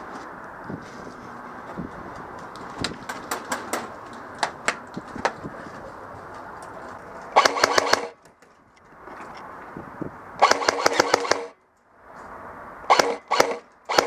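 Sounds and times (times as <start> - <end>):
airsoft gun full-auto burst: 7.4 - 8.2, 10.4 - 11.6, 12.9 - 14.0
airsoft gun single shots: 7.4 - 8.2, 10.4 - 11.6, 12.9 - 14.0.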